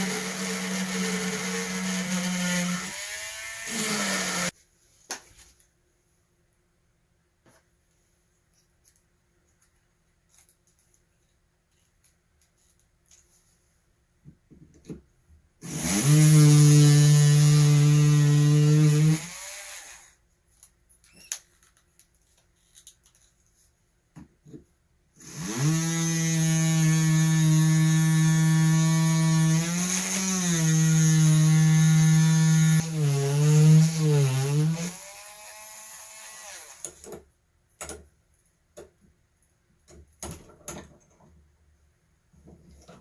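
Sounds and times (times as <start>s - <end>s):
rotary tool drilling into stone: 0.0s - 4.5s, 15.6s - 20.1s, 25.2s - 37.0s.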